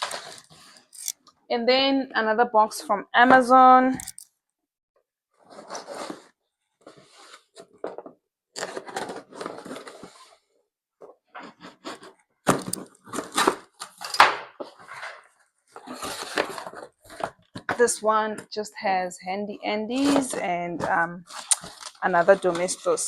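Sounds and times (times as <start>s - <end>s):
packaging scraping: 0.0s - 1.1s, 5.5s - 6.3s, 8.6s - 10.4s, 11.4s - 17.7s, 21.2s - 23.0s
packing tape tearing: 12.5s - 14.3s, 21.3s - 22.0s.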